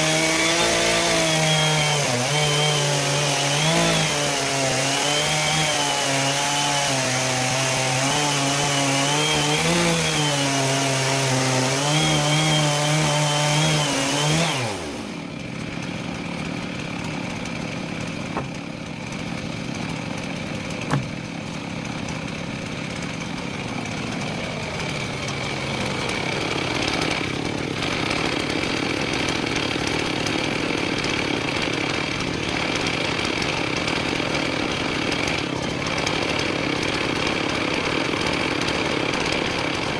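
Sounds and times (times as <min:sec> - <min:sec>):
chainsaw cutting log: 0:00.0 - 0:39.9.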